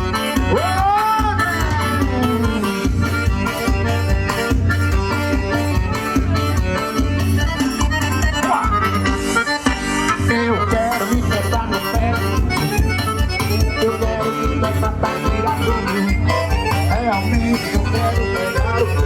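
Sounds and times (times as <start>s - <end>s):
accordion playing: 0.0s - 19.0s
pulsing bass beat: 0.0s - 19.0s.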